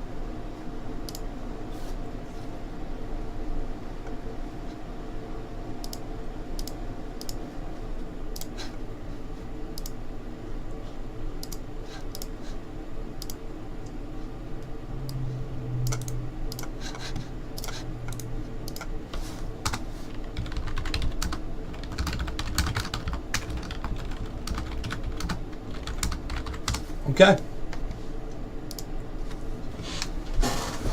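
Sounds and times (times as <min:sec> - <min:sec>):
steady low hum: 0:00.0 - 0:30.9
keyboard typing: 0:15.8 - 0:18.9, 0:19.6 - 0:26.8.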